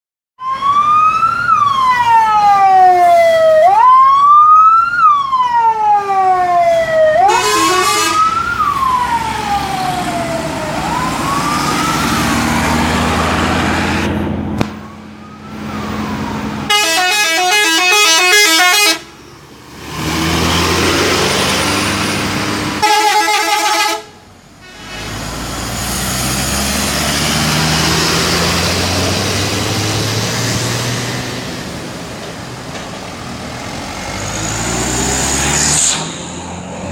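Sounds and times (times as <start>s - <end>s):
siren-like horn wail: 0.4s - 19.3s, 22.8s - 25.0s
multi-tone bus horn melody: 7.2s - 8.3s, 16.7s - 19.2s, 22.8s - 25.1s
bus engine running: 8.8s - 36.9s.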